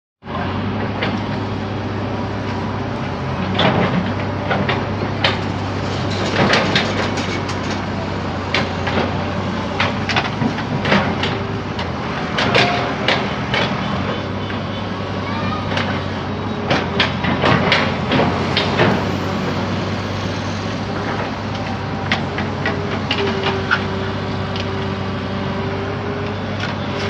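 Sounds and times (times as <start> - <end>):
diesel engine running: 0.2 - 27.0
sharp knocks and clanks: 3.4 - 14.6, 15.7 - 19.7.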